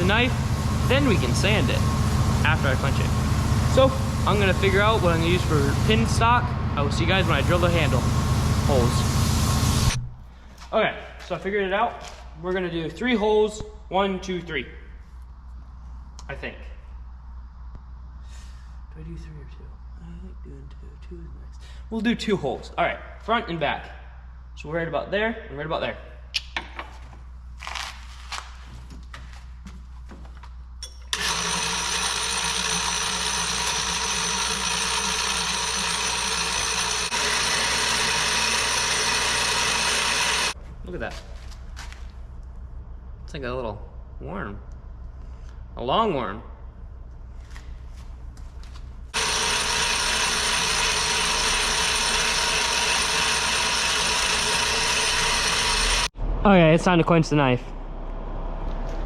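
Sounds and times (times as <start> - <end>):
electric drill whining: 0.0 - 6.0, 31.1 - 40.6, 49.2 - 56.1.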